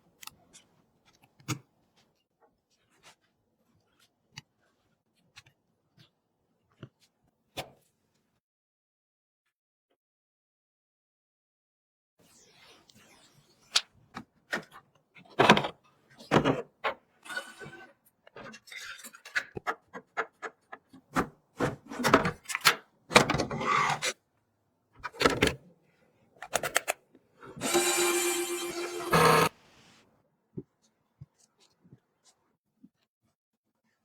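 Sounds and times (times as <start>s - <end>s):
computer parts rubbing and clicking: 15.4s - 22.6s, 23.4s - 24.2s, 26.4s - 29.9s
steady rasping sound: 27.5s - 29.6s.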